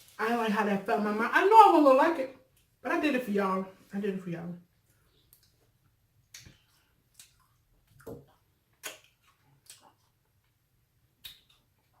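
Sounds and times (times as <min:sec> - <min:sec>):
mouth clicks and smacks: 0:04.9 - 0:10.3, 0:11.2 - 0:12.0.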